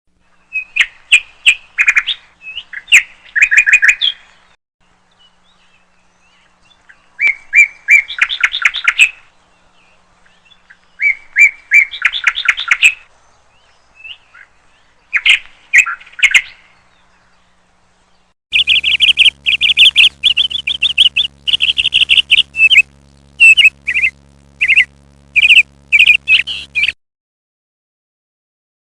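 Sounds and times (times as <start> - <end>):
steady low hum: 16.8 - 27.0
bird chirping loudly: 18.5 - 27.0.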